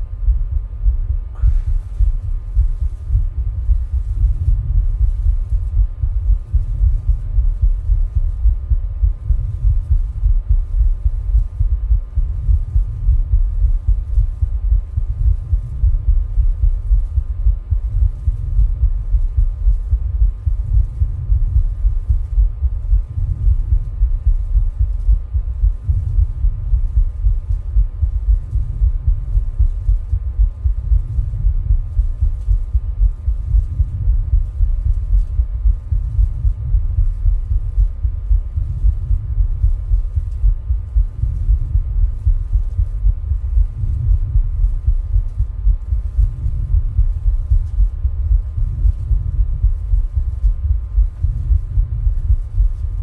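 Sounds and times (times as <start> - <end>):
dull low heartbeats: 0.0 - 53.0.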